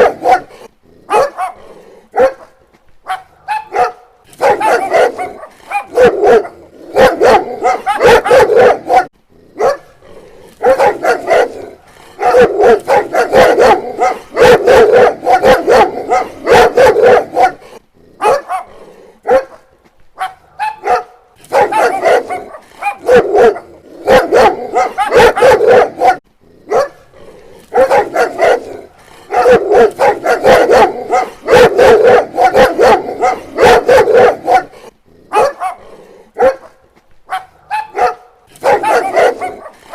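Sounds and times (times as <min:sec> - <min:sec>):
dog barking: 0:00.0 - 0:10.0, 0:10.6 - 0:27.1, 0:27.7 - 0:39.9.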